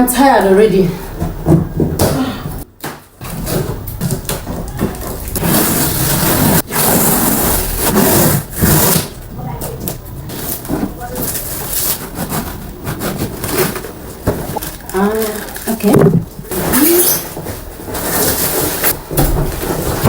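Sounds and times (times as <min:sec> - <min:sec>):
plastic packaging crinkling: 0:03.0 - 0:20.0.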